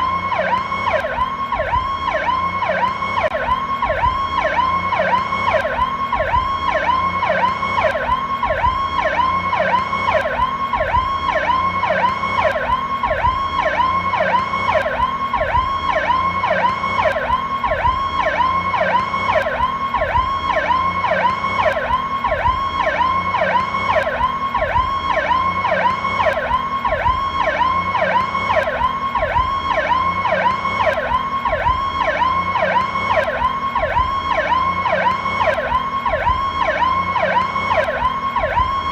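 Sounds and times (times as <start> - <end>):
ambulance siren yelping: 0.0 - 38.9.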